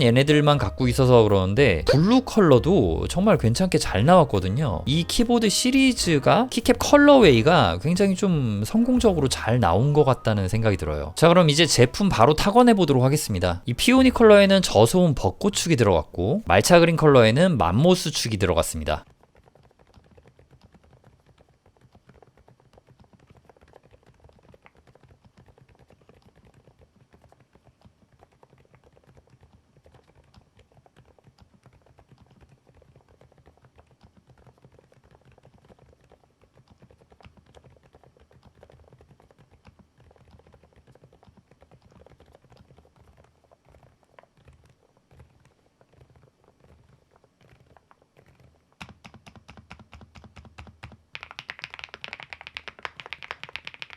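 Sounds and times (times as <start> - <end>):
sharp keyboard keystrokes: 28.2 - 53.9
soft keyboard keystrokes: 28.2 - 53.9.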